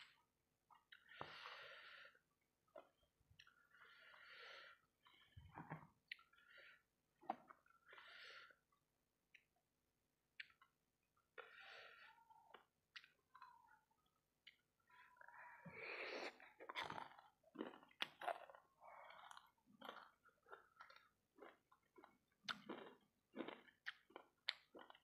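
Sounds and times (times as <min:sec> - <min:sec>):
mouth clicks and chewing: 0:10.4 - 0:10.7, 0:12.5 - 0:13.7, 0:14.4 - 0:14.7, 0:16.1 - 0:25.0.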